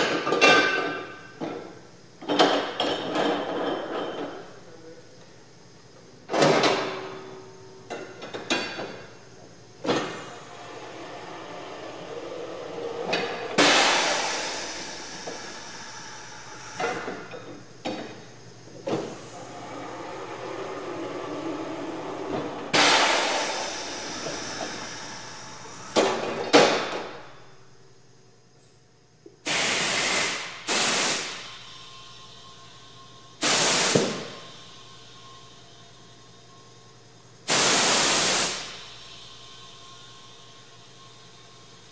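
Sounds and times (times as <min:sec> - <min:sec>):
compressed air hissing: 0:13.3 - 0:17.4, 0:22.7 - 0:26.9, 0:29.4 - 0:32.0, 0:33.4 - 0:34.6, 0:37.4 - 0:39.3.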